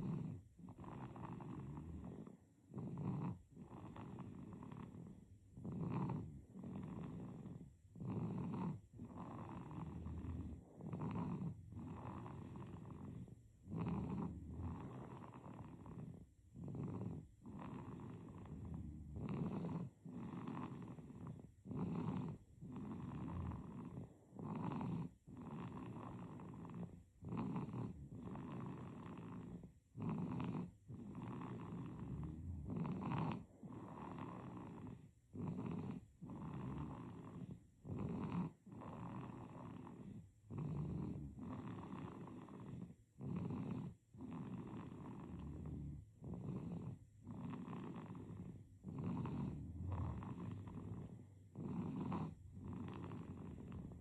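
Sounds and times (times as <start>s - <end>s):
baby snoring: 0.0s - 54.0s.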